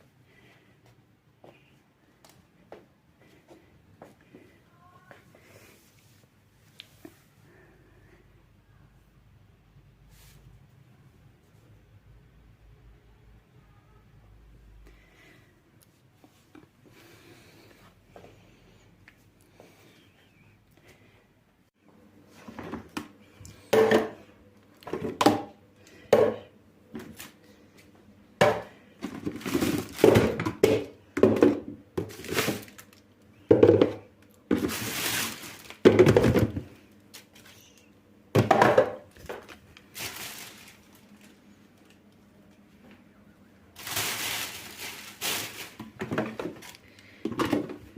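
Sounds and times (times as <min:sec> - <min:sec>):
faint steady hum: 0:00.0 - 0:47.9
household items clattering: 0:28.4 - 0:32.9, 0:33.5 - 0:36.8, 0:43.8 - 0:47.9.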